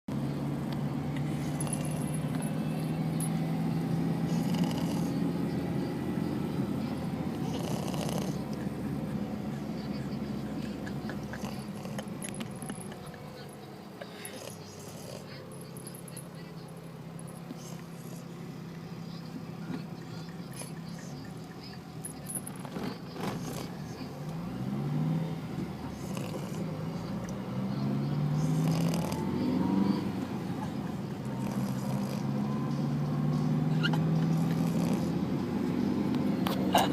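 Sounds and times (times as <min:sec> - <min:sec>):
dog snoring: 0:01.2 - 0:02.6, 0:03.8 - 0:05.4, 0:07.3 - 0:08.8, 0:10.4 - 0:12.5, 0:14.0 - 0:15.4, 0:17.4 - 0:18.3, 0:22.5 - 0:23.9, 0:25.8 - 0:27.0, 0:28.2 - 0:30.0, 0:31.2 - 0:32.5, 0:33.8 - 0:35.3.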